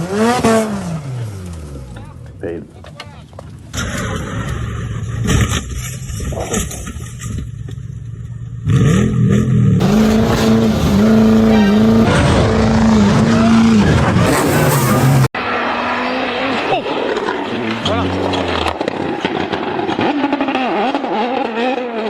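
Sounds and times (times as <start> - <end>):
engine revving hard: 8.7 - 22.0.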